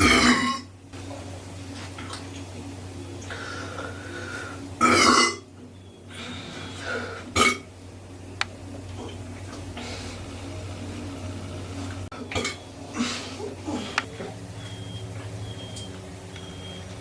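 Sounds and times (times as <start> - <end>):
person burping: 0.0 - 0.7, 4.8 - 5.4, 7.3 - 7.7.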